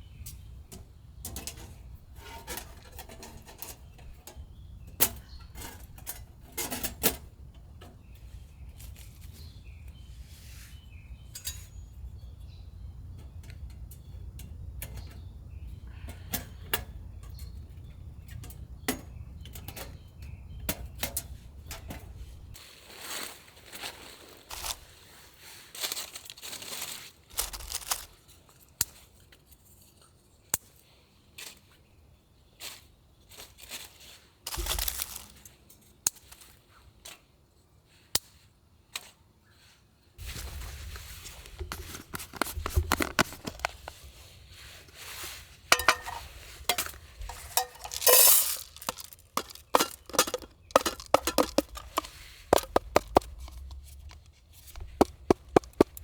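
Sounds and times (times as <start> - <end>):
rustling and tearing: 22.8 - 25.1, 25.7 - 28.3, 32.7 - 35.4, 40.2 - 56.0
cookware clinking: 45.7 - 52.1
quick sharp taps: 49.4 - 56.0.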